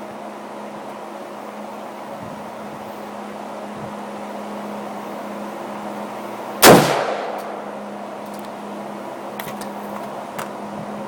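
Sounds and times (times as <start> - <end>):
rifle shot: 6.6 - 7.7.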